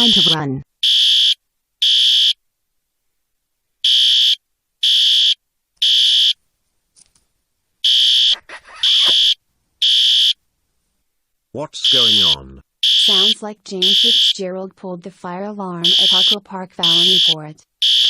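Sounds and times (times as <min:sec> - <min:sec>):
fire alarm beeping: 0:00.0 - 0:02.4, 0:07.8 - 0:10.4, 0:11.9 - 0:14.4, 0:15.8 - 0:18.0.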